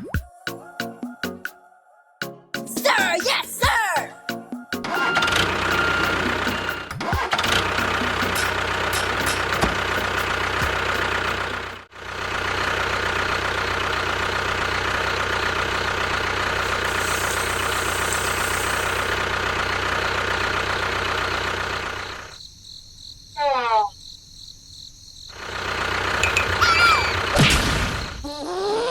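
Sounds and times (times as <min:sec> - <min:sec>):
engine idling: 0:04.8 - 0:22.4, 0:25.3 - 0:28.2.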